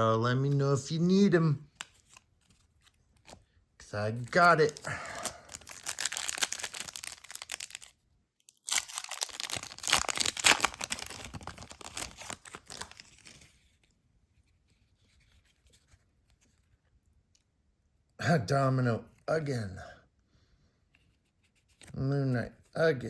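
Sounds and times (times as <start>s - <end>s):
wrapper tearing and crinkling: 4.2s - 13.6s.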